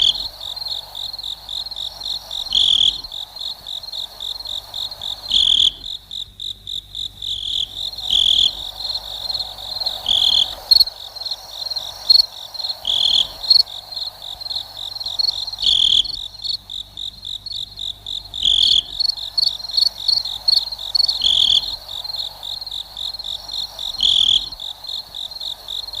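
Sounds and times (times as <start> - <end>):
cricket chirping: 0.0 - 26.0.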